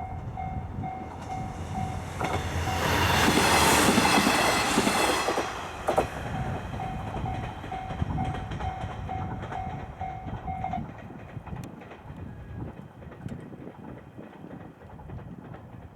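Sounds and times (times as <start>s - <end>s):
level-crossing warning bell: 0.0s - 3.4s, 6.3s - 10.9s
wheels clattering on rail joints: 0.0s - 15.9s.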